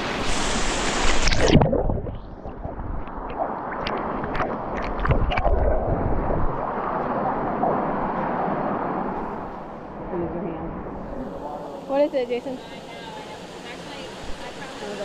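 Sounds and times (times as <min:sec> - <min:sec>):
water rushing: 0:00.0 - 0:15.0
wind buffeting microphone: 0:01.5 - 0:11.2.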